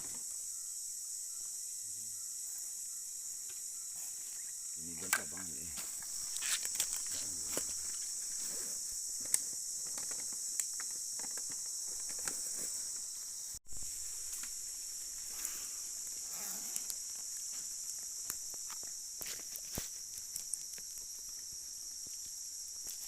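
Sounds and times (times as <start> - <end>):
insect chorus drone: 0.0 - 23.0
small clicks and rustles: 9.1 - 13.1, 16.0 - 23.0.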